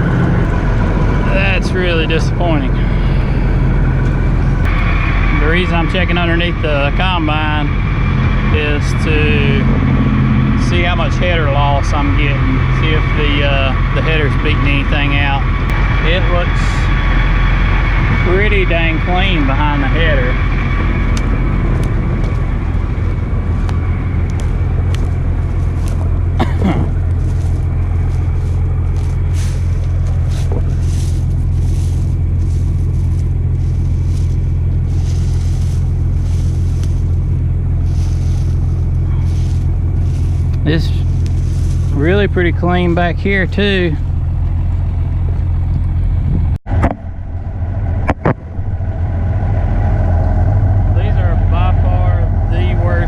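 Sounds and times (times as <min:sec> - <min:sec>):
downward pitch sweep: 0:00.0 - 0:42.4
combine harvester running: 0:00.0 - 0:53.0.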